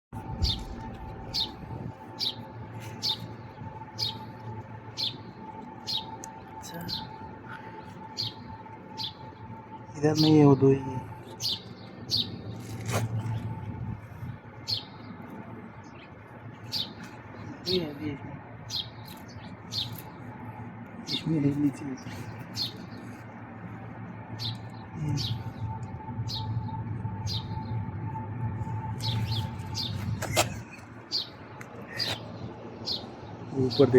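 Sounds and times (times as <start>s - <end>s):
faint steady hum: 0.2s - 33.9s
small birds chirping: 2.2s - 13.5s, 14.6s - 23.4s, 29.0s - 33.9s.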